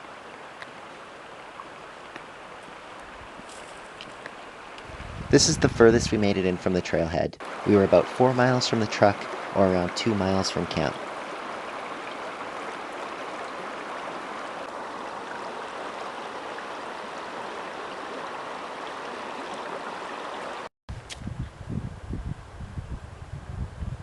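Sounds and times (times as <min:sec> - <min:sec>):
creek rushing: 0:00.0 - 0:20.7
wind gusts on microphone: 0:04.8 - 0:06.7, 0:20.9 - 0:24.0.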